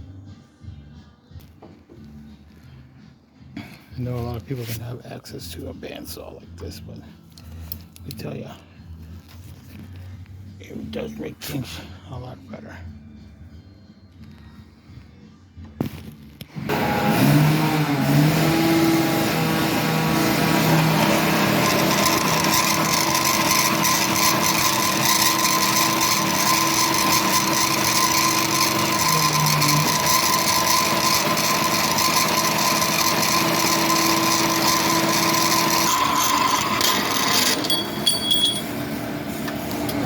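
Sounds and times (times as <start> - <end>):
bandsaw cutting through steel: 16.7 - 38.7.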